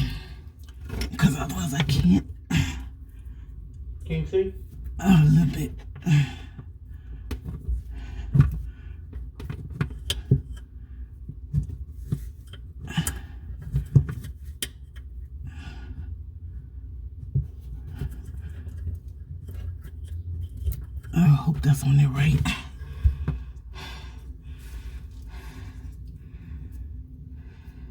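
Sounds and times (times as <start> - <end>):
clicks and knocks of hose fittings: 7.2 - 15.3, 17.2 - 21.2
person breathing: 22.5 - 27.9.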